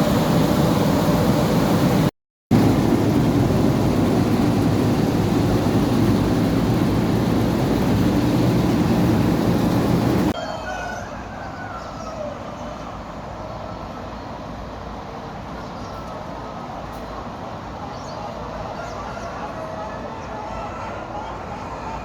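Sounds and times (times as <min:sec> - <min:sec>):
loud steady rushing noise: 0:00.0 - 0:10.4
rooster crowing: 0:10.3 - 0:12.9, 0:18.6 - 0:22.0
chickens: 0:10.3 - 0:13.0, 0:18.2 - 0:22.0.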